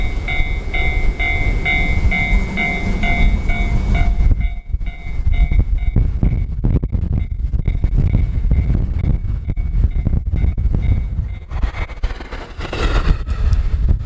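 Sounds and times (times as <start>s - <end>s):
level-crossing bell ringing: 0.0s - 6.0s
wind buffeting microphone: 0.0s - 14.0s.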